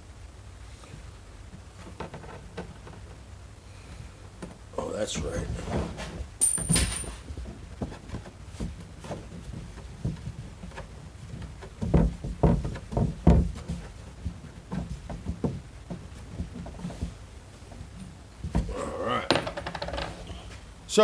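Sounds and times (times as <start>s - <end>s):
small fittings knocking and clicking: 19.3s - 20.6s.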